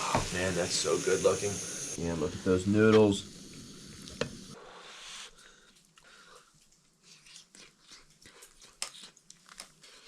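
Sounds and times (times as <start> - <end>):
chewing and crunching: 5.6 - 10.0.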